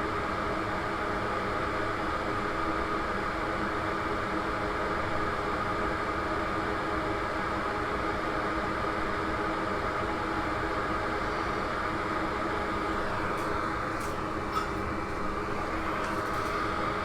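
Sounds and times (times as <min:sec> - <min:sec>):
electric fan whirring: 0:10.3 - 0:17.0.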